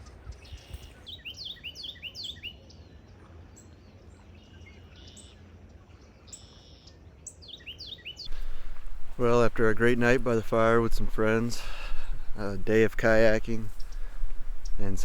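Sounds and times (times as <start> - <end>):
birds chirping: 7.5 - 15.0
steady low rumble: 8.3 - 15.0.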